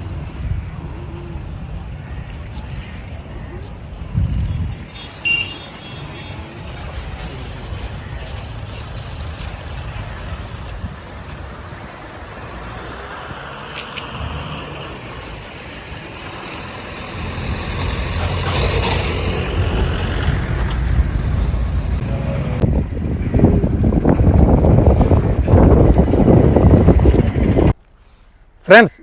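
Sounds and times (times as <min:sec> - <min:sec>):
passing vehicles: 0:00.0 - 0:27.8
heavy low rumbling: 0:16.3 - 0:27.8
high squeal: 0:22.0 - 0:22.6.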